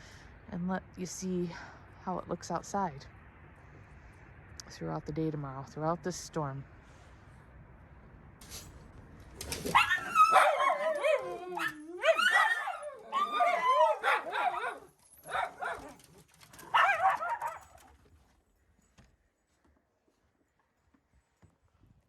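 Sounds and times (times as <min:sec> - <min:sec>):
dog whining and yipping: 0:09.4 - 0:17.9.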